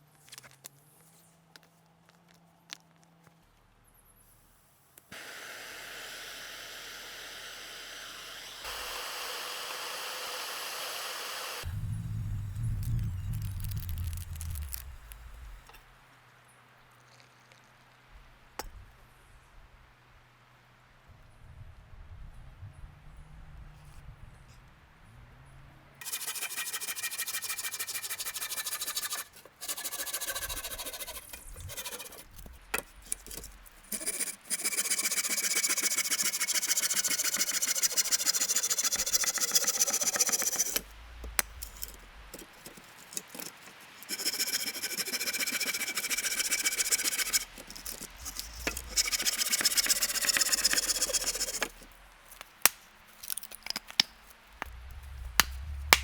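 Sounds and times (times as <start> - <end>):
wood being sawn: 5.1 - 11.7, 26.0 - 52.8.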